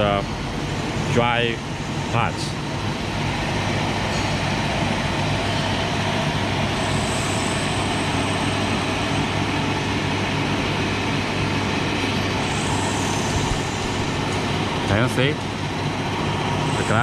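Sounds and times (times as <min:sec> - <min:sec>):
faint high whine: 0:00.0 - 0:17.0
low constant hum: 0:00.0 - 0:17.0.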